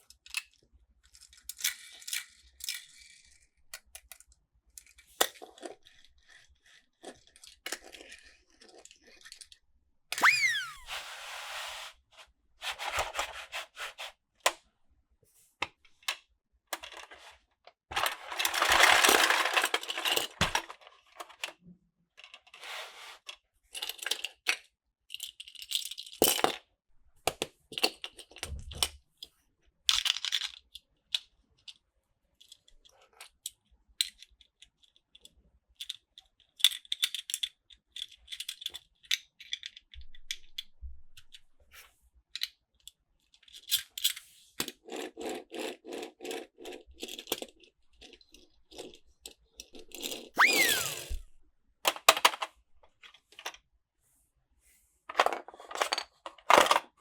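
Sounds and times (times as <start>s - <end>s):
toy pieces rattling scrape: 50.3s - 51.2s.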